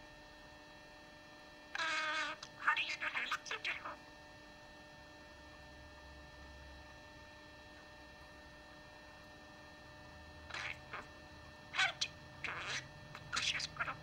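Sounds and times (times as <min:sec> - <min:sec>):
low electrical hum: 0:00.0 - 0:14.0
budgie chirps: 0:01.8 - 0:04.0, 0:10.5 - 0:11.1, 0:11.7 - 0:14.0.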